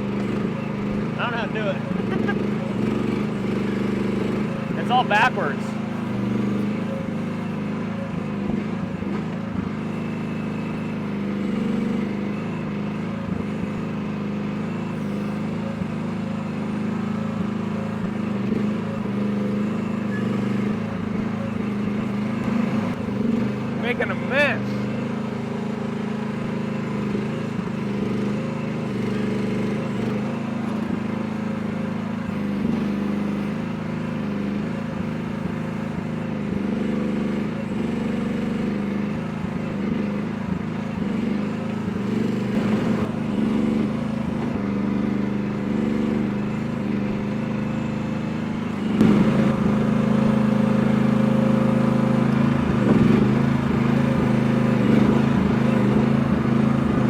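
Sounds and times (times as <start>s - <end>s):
excavator engine running: 0.0s - 57.0s.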